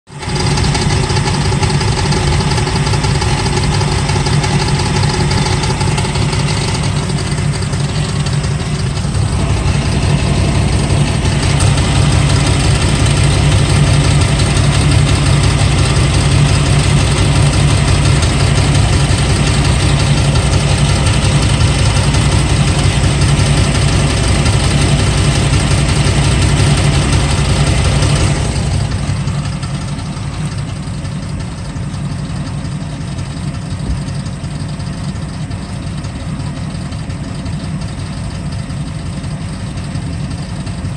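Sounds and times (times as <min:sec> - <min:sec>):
car engine running: 0:00.1 - 0:40.9
engine rattle: 0:00.1 - 0:40.9.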